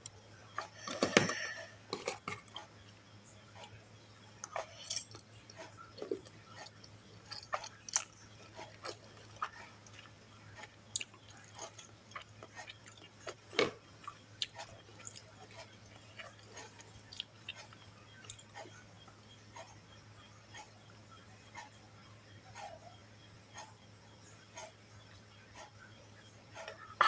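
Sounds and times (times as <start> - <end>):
person chewing noodles: 0.1 - 2.9, 4.4 - 18.9.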